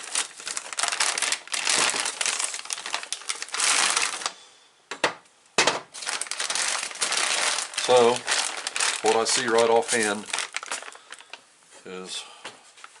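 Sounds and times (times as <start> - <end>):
plastic bag crinkling: 0.0 - 4.4, 5.9 - 11.4.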